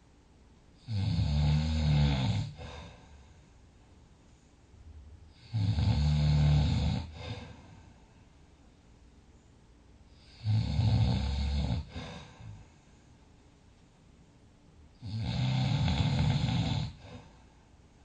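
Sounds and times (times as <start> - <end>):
quiet breathing: 0.7 - 18.0
person snoring heavily: 0.8 - 3.2, 5.3 - 7.8, 10.2 - 12.6, 15.0 - 17.4.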